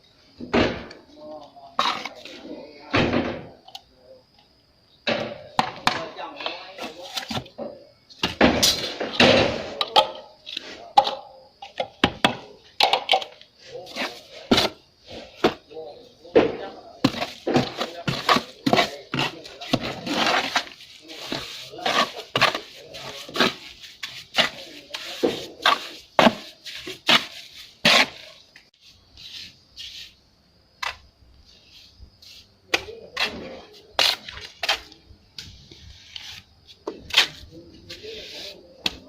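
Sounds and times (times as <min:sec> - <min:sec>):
trowel scraping render: 0:13.6 - 0:15.6, 0:16.4 - 0:30.2, 0:31.7 - 0:39.0.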